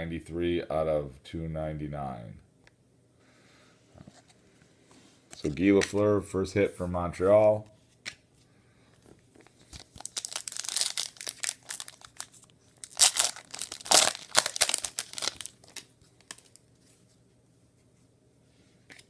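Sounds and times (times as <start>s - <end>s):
plastic wrapper tearing and crinkling: 9.5s - 16.6s.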